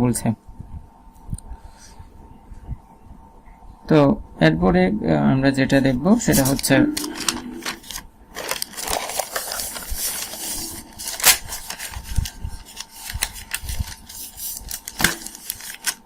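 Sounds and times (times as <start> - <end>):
crinkling: 6.2 - 16.0.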